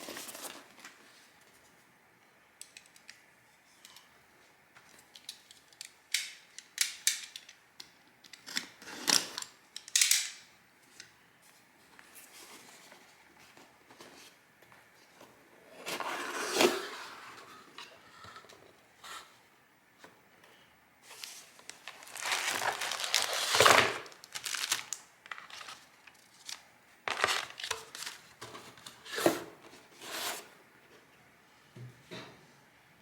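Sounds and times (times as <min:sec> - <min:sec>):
paper and packaging crinkling: 0:21.1 - 0:28.9.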